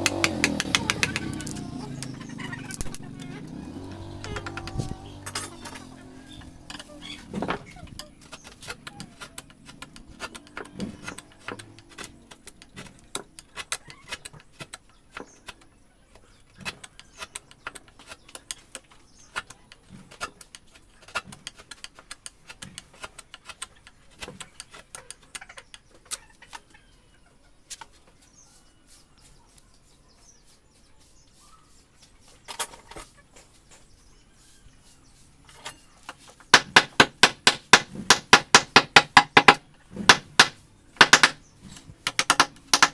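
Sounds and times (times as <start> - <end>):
sharp knocks: 0.0 - 1.6, 36.5 - 41.4, 42.1 - 42.9
chisel tapping wood: 0.0 - 2.1, 36.5 - 41.4, 42.1 - 42.9.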